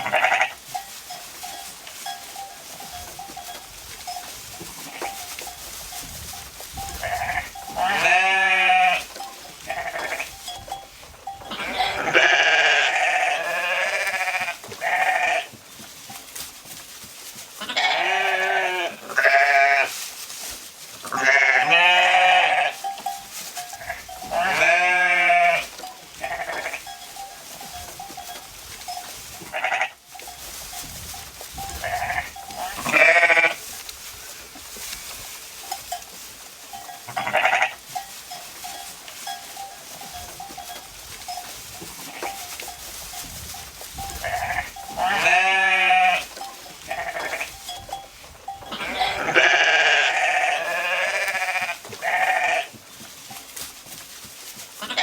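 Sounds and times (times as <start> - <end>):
sheep bleating: 0.0 - 0.6, 6.8 - 9.1, 9.7 - 10.3, 11.3 - 15.5, 17.6 - 19.9, 21.1 - 22.9, 23.8 - 26.9, 29.4 - 30.0, 31.7 - 33.6, 37.1 - 37.8, 44.1 - 47.7, 48.5 - 52.7, 54.8 - 55.0.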